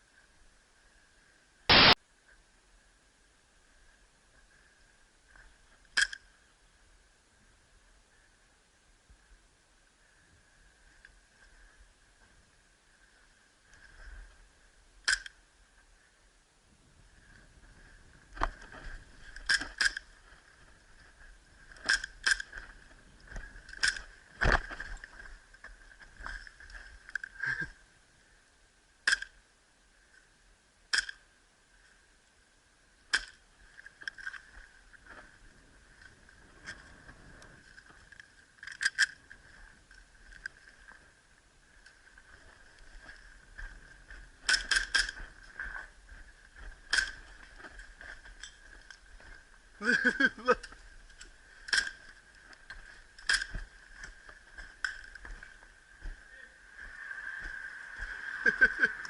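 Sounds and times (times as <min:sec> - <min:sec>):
airsoft pistol shots: 0:01.7 - 0:02.0.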